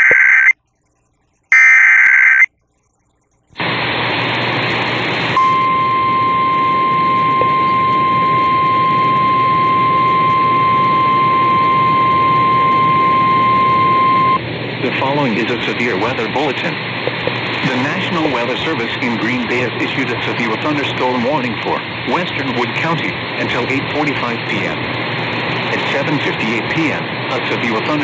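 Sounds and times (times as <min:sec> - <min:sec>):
screeching digital data tones: 0:00.0 - 0:00.6, 0:01.5 - 0:02.5.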